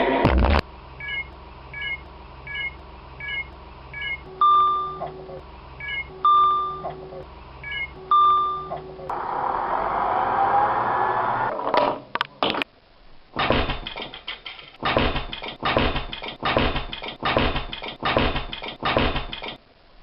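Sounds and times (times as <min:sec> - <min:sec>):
electronic chime tones: 0:01.0 - 0:09.0.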